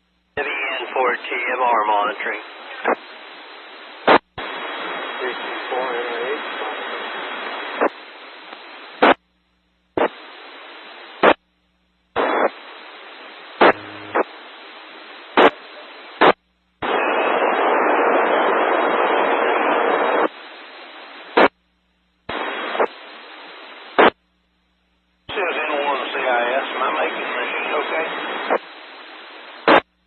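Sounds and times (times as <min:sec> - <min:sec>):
radio hiss: 0:00.0 - 0:09.2, 0:10.0 - 0:11.4, 0:12.1 - 0:21.6, 0:22.3 - 0:24.2, 0:25.3 - 0:30.0
loud rush of radio static: 0:00.4 - 0:09.2, 0:10.0 - 0:11.4, 0:12.2 - 0:21.5, 0:22.3 - 0:24.2, 0:25.3 - 0:29.8
radio squelch burst: 0:13.6 - 0:14.5, 0:25.3 - 0:28.8.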